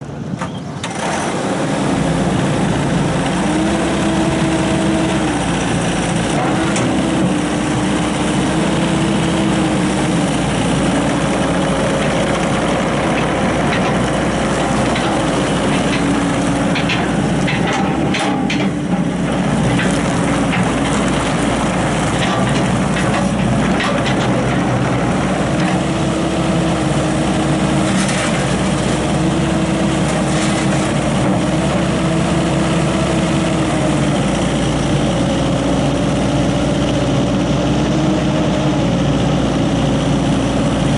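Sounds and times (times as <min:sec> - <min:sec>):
diesel engine running: 0:00.0 - 0:40.9
short clanks: 0:13.1 - 0:24.9.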